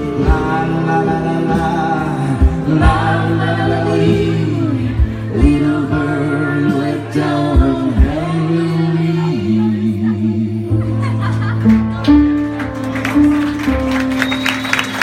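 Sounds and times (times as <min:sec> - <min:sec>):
man and woman singing: 0:00.0 - 0:11.1.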